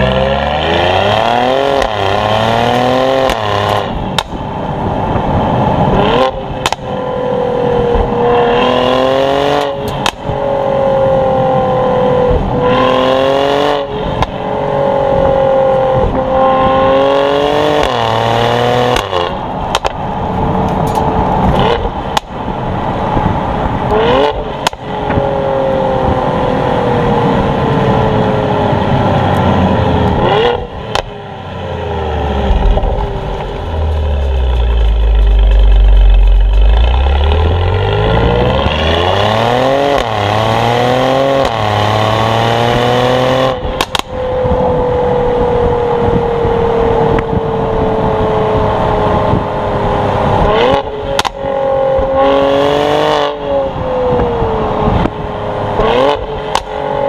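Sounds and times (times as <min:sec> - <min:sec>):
car engine revving: 0:00.0 - 0:57.0
exhaust cracks and pops: 0:06.6 - 0:06.9, 0:19.7 - 0:22.4, 0:32.4 - 0:37.9, 0:43.7 - 0:44.2, 0:51.1 - 0:51.5, 0:56.5 - 0:56.8.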